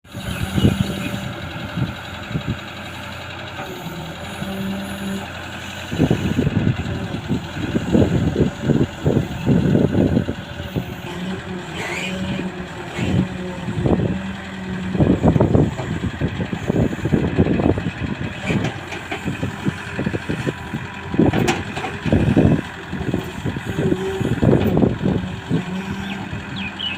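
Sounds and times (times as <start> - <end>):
excavator diesel engine running: 0.0 - 26.9
low thumps and clunks: 6.0 - 26.4.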